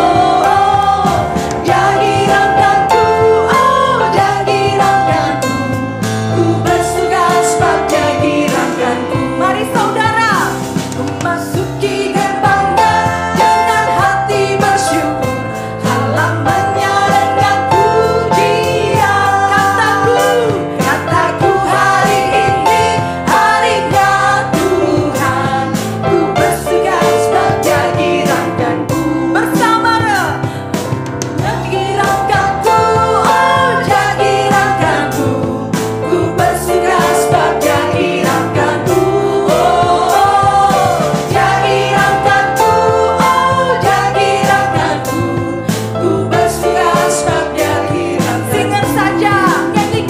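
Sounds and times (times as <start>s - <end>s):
steady drum beat: 0.0s - 50.0s
worship band playing: 0.0s - 50.0s
person singing: 19.7s - 22.4s.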